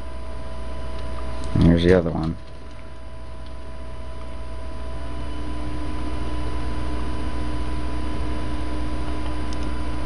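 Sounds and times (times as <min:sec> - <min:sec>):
low hum and hiss: 0:00.0 - 0:10.0
faint thin whining tones: 0:03.1 - 0:09.9.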